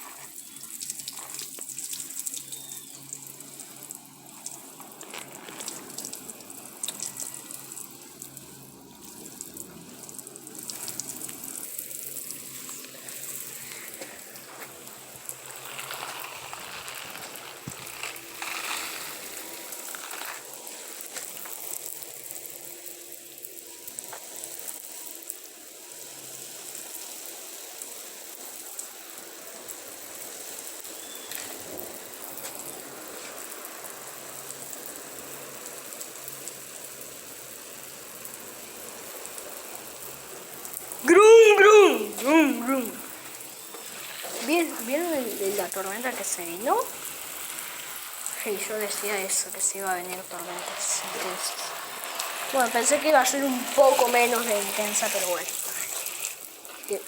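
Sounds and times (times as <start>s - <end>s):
water gushing: 0.0s - 57.0s
raindrop impacts: 3.1s - 8.3s
heavy rain pouring: 31.5s - 57.0s.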